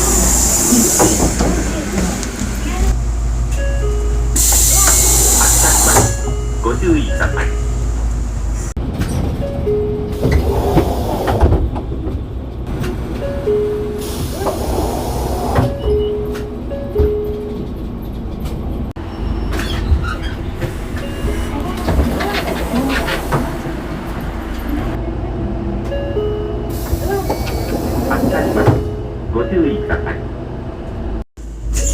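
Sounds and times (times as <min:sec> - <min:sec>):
bus engine running: 0:00.0 - 0:29.4
bus cabin noise: 0:00.0 - 0:31.9.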